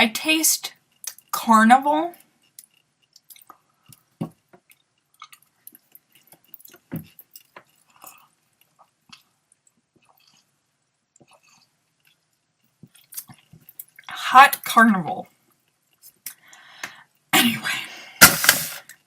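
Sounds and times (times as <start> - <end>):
person chewing crunchy nuts: 2.4 - 14.1.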